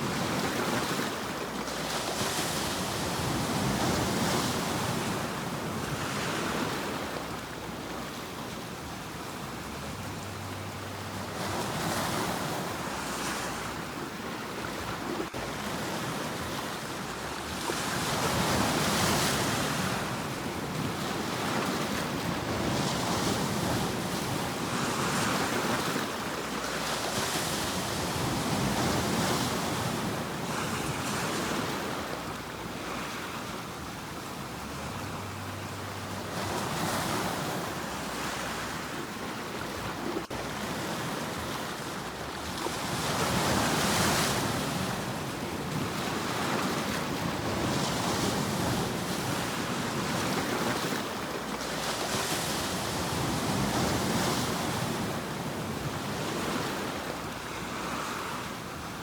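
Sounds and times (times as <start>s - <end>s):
sea waves breaking on shore: 0.0s - 59.0s.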